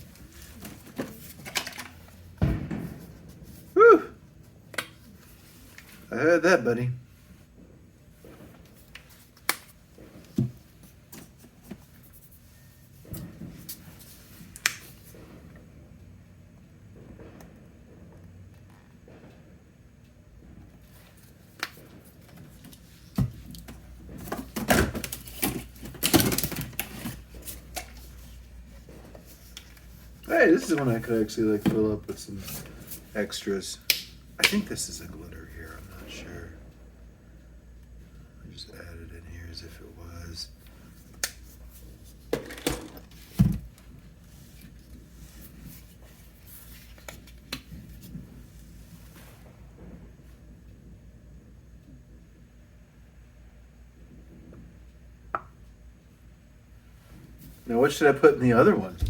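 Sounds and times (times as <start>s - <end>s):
low steady hum: 0.0s - 59.0s
thump on worktable: 2.4s - 3.1s.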